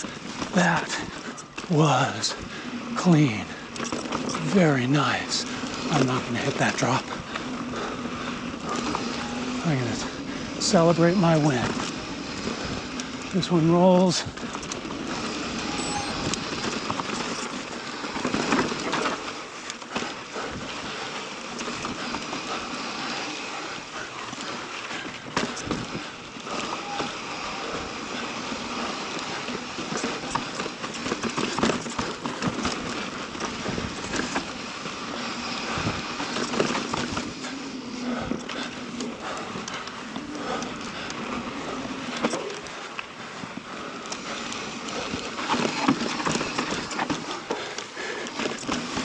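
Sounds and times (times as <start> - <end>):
bike rattling: 0.0 - 49.0
bike tyres on dirt trail: 0.0 - 49.0
knocks and clatters from bumps: 29.2 - 34.5, 44.5 - 49.0.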